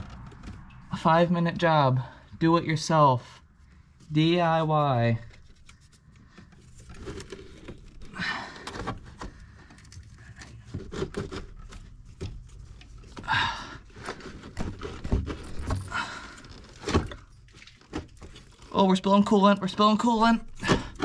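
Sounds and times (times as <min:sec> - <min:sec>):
clicks knocks and scrapes of parts: 0:05.0 - 0:13.3
man breathing hard: 0:13.2 - 0:14.4.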